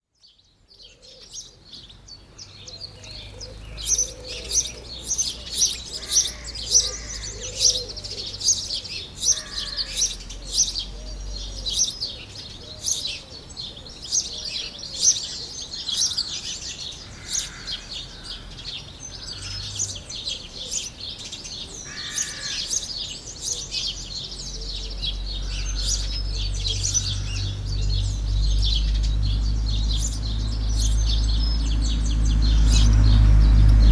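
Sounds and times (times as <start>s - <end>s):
birds chirping in chorus: 0.0s - 33.9s
low rumble: 26.2s - 33.9s.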